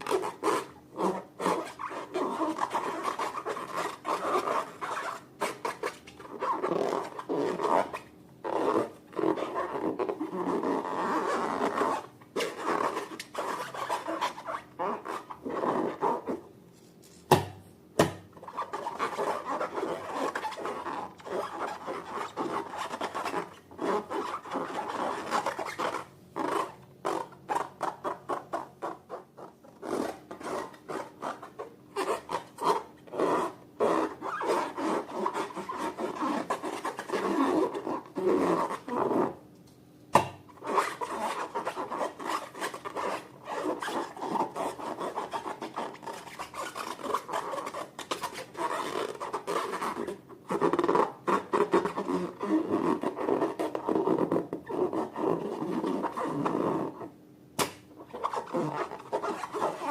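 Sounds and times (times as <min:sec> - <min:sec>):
sharp snap: 0:40.1 - 0:40.4, 0:57.6 - 0:57.9.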